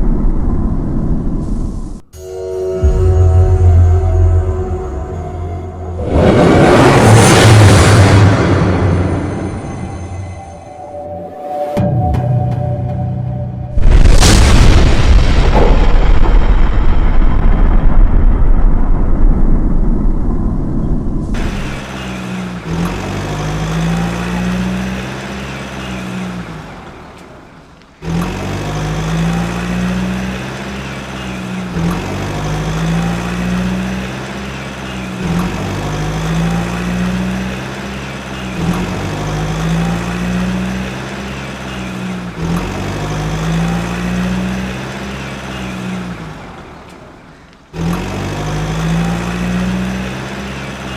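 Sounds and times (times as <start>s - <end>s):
deep boom: 13.6s - 21.4s.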